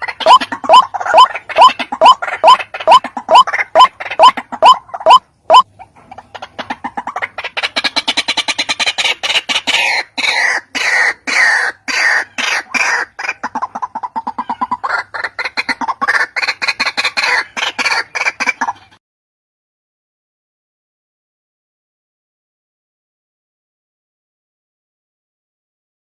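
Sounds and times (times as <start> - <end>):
waterhen calling harsh clucking: 0.0 - 19.0.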